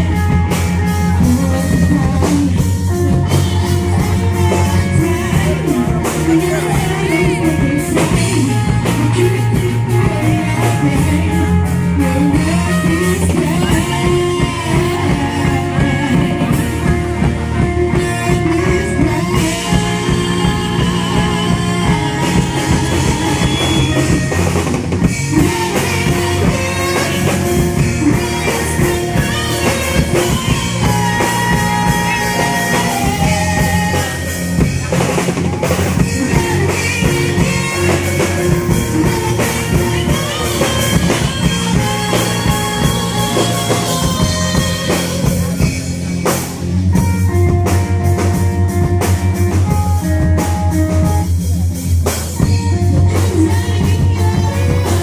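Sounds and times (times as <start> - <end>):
rock music with drums and guitars: 0.0 - 55.0.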